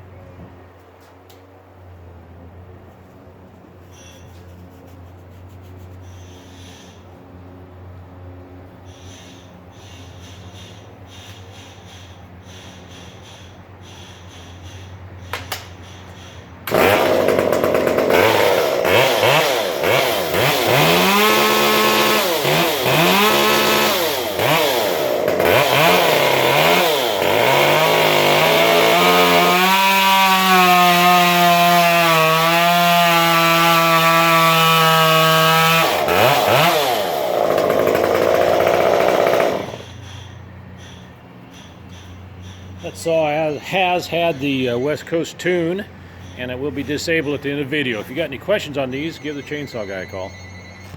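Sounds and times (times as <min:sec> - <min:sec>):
chainsaw cutting wood: 0:15.3 - 0:40.0.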